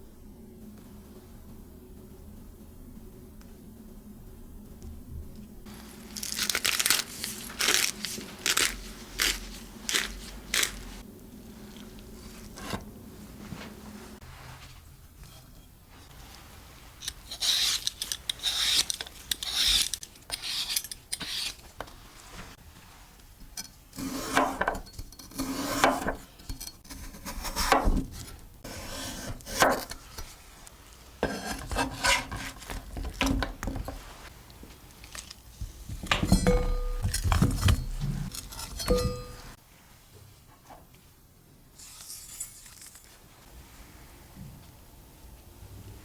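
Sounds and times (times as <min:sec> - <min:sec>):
utensils scraping on a board: 0:17.2 - 0:21.7, 0:31.2 - 0:34.0.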